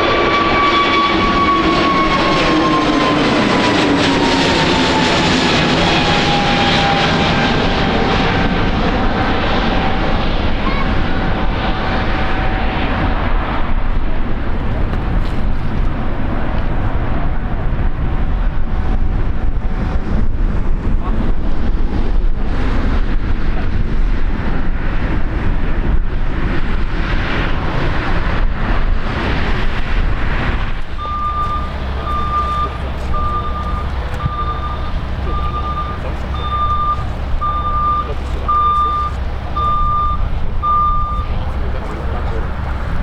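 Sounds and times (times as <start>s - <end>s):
loud rushing noise with rumble: 0.0s - 43.0s
low engine hum: 0.0s - 43.0s
reversing alarm beeping: 30.9s - 41.4s.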